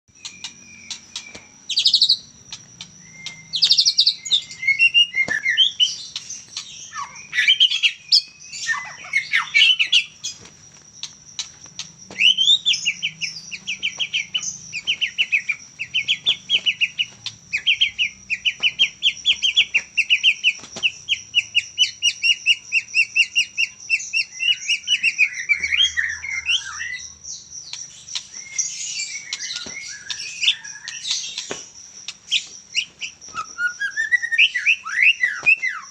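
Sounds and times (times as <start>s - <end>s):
songbird singing whistled phrases: 0.2s - 10.1s, 32.3s - 35.9s.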